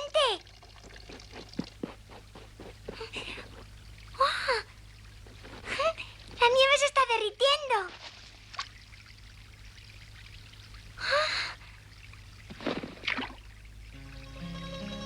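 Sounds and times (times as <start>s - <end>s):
soft plucked-string music: 13.9s - 15.0s.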